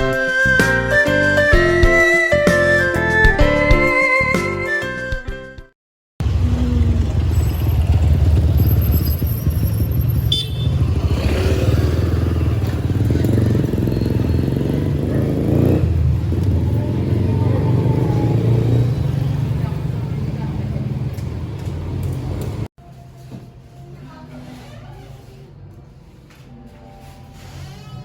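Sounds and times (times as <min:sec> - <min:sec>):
motor vehicle rumble: 0:06.2 - 0:22.7
motorcycle engines: 0:06.2 - 0:22.7
street traffic: 0:06.2 - 0:28.0.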